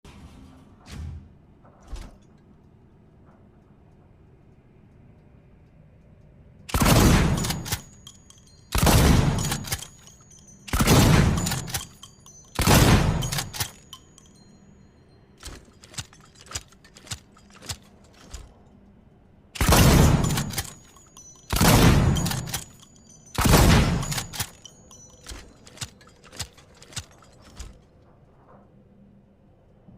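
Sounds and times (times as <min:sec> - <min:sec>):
light metallic clicks: 0:02.2 - 0:14.8
shotgun shots: 0:06.7 - 0:08.0, 0:08.7 - 0:10.0, 0:10.7 - 0:12.0, 0:12.6 - 0:13.8, 0:19.6 - 0:20.8, 0:21.5 - 0:22.7, 0:23.4 - 0:24.7
shotgun pump clacking: 0:06.7 - 0:14.4, 0:15.4 - 0:18.5, 0:19.6 - 0:27.8.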